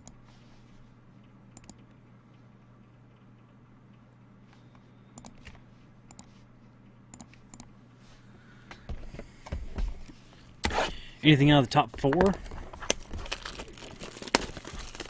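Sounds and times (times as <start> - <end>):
wrappers rustling and knocks: 12.2 - 15.0.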